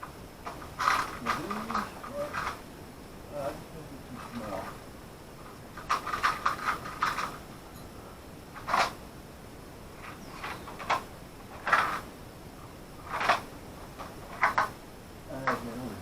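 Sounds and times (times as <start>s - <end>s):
wire terminals rattling and scraping: 0.0s - 2.7s, 4.0s - 9.0s, 10.0s - 12.1s, 13.0s - 14.8s.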